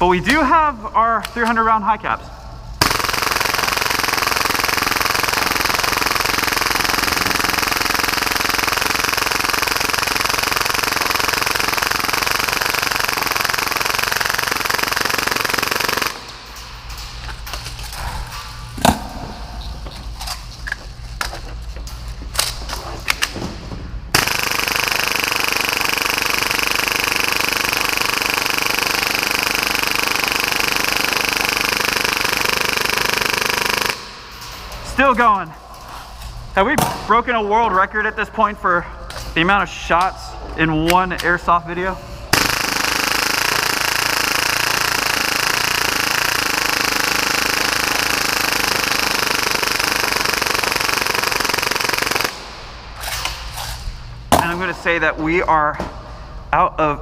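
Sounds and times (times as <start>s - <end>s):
airsoft pistol full-auto firing: 2.8s - 16.3s, 24.1s - 34.2s, 42.3s - 52.6s.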